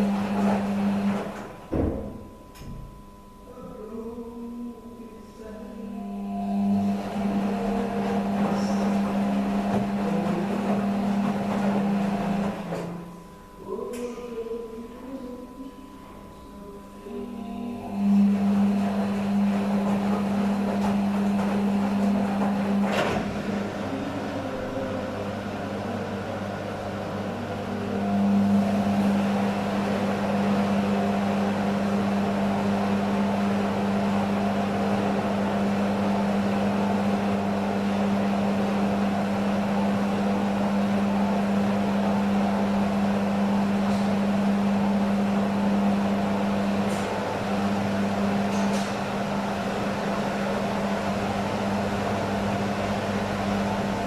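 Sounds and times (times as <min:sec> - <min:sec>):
washing machine drain pump humming: 0:00.0 - 0:54.0.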